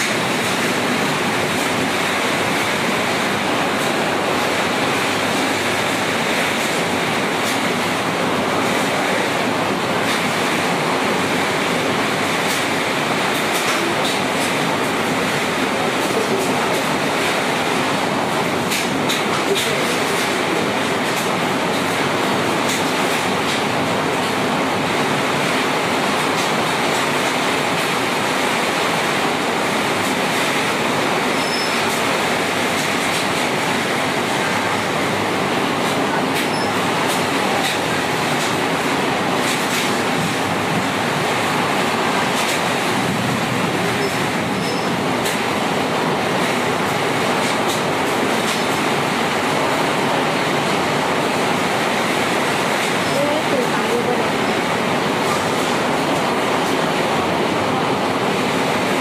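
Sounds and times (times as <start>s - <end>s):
heavy rain in strong wind: 0.0s - 59.0s.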